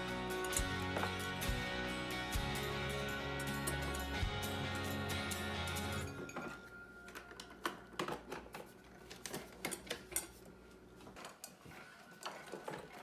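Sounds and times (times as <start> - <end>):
kitchen items clattering: 6.0 - 13.0.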